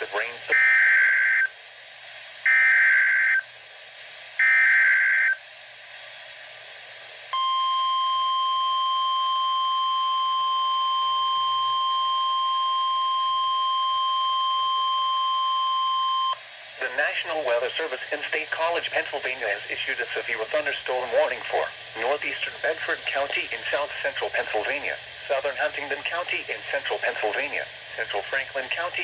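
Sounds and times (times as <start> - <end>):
steady warning alarm tone: 2.5 - 3.4, 4.4 - 5.4, 7.4 - 16.4.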